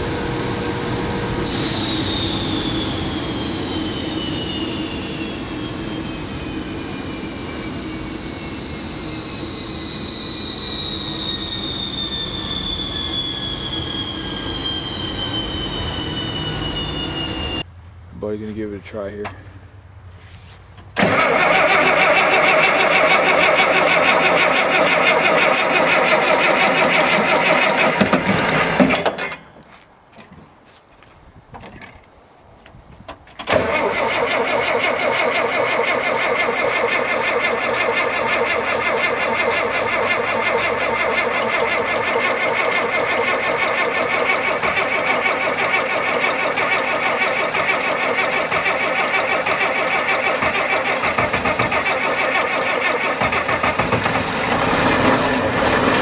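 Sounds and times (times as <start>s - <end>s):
diesel engine running: 0.0s - 29.8s, 31.7s - 56.0s
diesel engine cranking: 0.0s - 30.6s, 31.3s - 56.0s.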